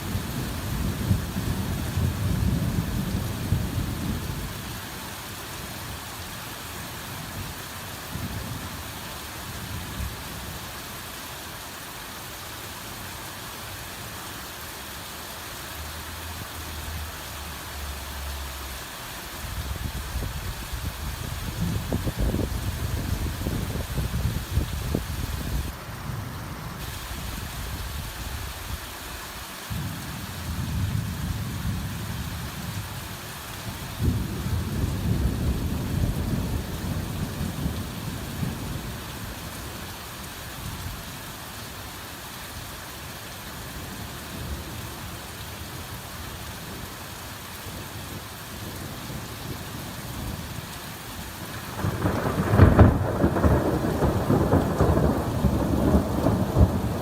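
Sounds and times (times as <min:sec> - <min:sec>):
heavy rain falling: 0:00.0 - 0:57.0
thunder rumbling: 0:19.8 - 0:25.8, 0:34.0 - 0:39.0, 0:51.5 - 0:57.0.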